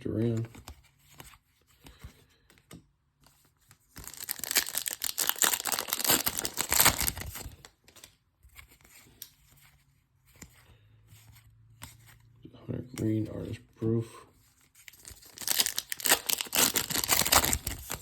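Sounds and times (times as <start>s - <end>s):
cards rustling and clicking: 0.1s - 12.3s, 14.4s - 18.0s
wrapper tearing open: 4.0s - 7.7s, 14.9s - 18.0s.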